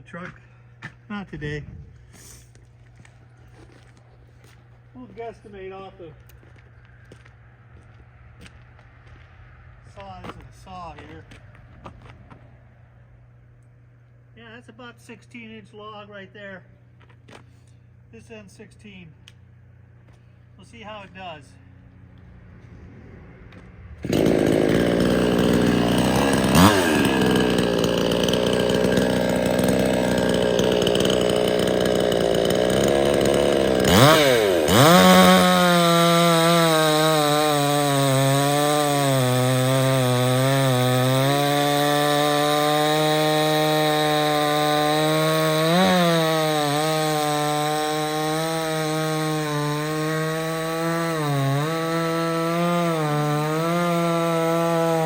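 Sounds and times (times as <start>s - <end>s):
chainsaw sawing through log: 24.0s - 55.0s.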